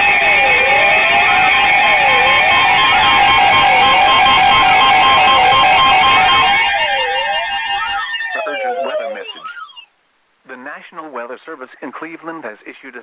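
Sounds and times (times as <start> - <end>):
siren-like sweeping tone: 0.0 - 9.8
beeping tone: 0.0 - 9.9
steady alarm tones: 0.0 - 9.9.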